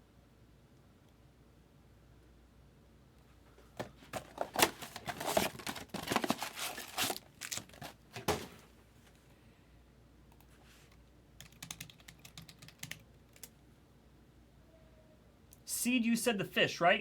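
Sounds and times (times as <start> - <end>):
packaging crinkling: 4.1 - 8.3.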